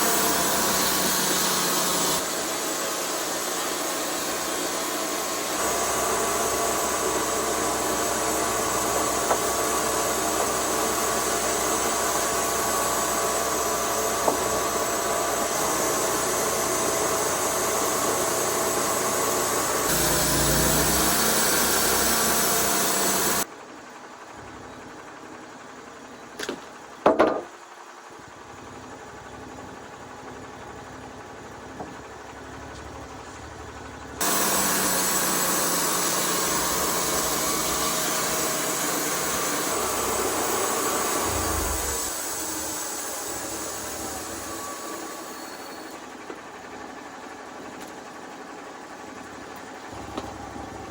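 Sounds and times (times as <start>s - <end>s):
band sawmill running: 0.0s - 23.5s, 31.7s - 50.9s.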